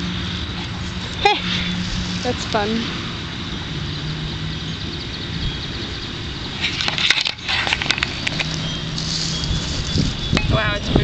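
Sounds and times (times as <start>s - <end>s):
fire crackling: 0.0s - 11.0s
steady hiss: 5.8s - 10.7s.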